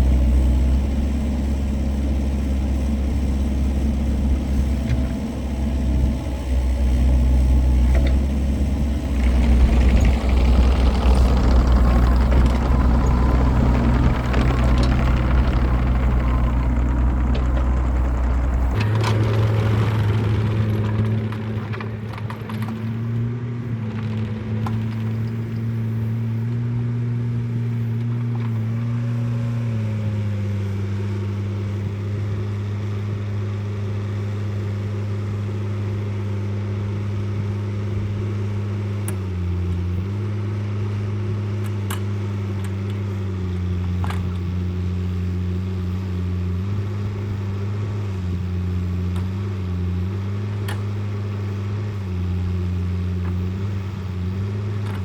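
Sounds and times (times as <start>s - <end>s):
machine engine running: 0.0s - 26.5s.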